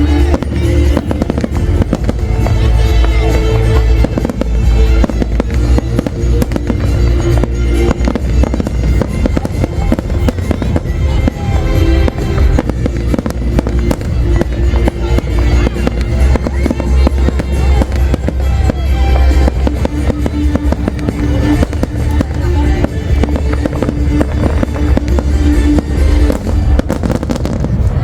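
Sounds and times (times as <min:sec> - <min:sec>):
deep rumble: 0:00.0 - 0:28.0
fireworks booms and crackling: 0:00.0 - 0:28.0
music playing: 0:00.0 - 0:28.0.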